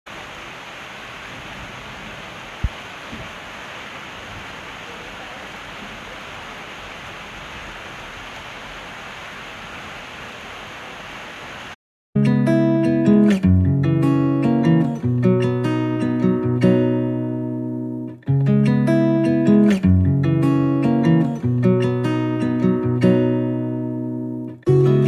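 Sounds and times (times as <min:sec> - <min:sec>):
steady rain falling: 0:00.1 - 0:11.8
strummed acoustic guitar music: 0:12.2 - 0:25.0.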